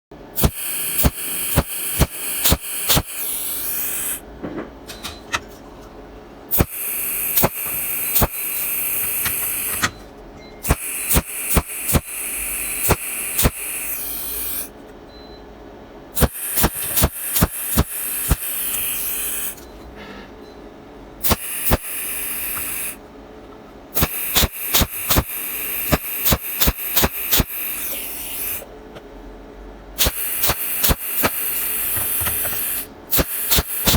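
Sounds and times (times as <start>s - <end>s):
welding pops: 0.4s - 3.2s, 16.2s - 18.9s, 21.2s - 22.9s, 24.0s - 27.5s, 30.0s - 33.9s
welding arc hissing and crackling: 0.4s - 4.2s, 6.5s - 9.8s, 10.7s - 14.7s, 16.2s - 19.6s, 21.2s - 23.0s, 24.0s - 28.7s, 30.0s - 33.9s.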